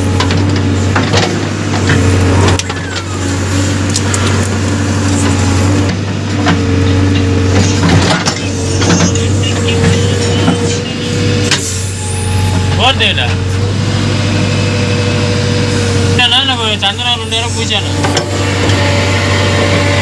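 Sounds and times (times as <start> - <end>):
diesel engine running under load: 0.0 - 20.0
knocks and clanks: 0.2 - 3.1, 5.2 - 10.8, 18.0 - 18.8
high-pitched whine: 7.6 - 13.7.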